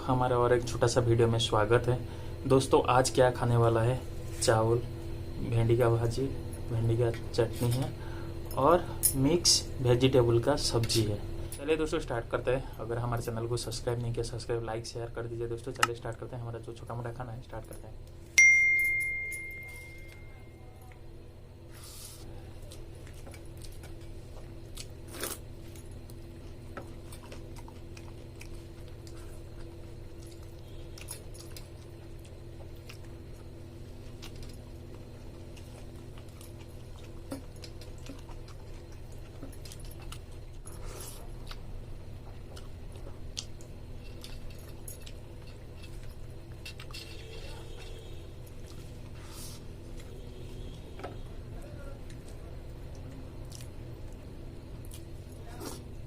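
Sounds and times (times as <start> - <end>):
low hum: 18.0 - 24.9
person chewing food: 21.7 - 50.7, 52.0 - 55.9.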